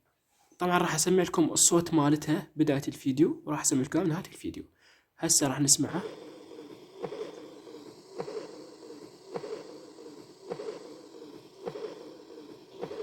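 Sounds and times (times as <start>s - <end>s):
blowing heart murmur: 5.8s - 13.0s
heartbeat: 6.0s - 13.0s.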